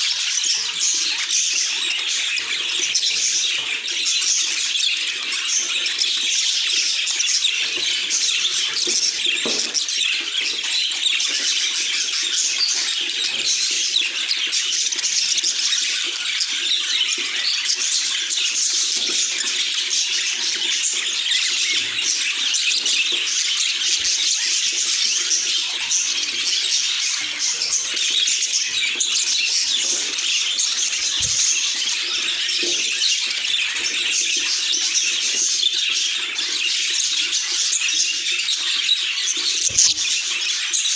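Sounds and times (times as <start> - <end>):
budgerigars chirping: 0.0 - 40.9.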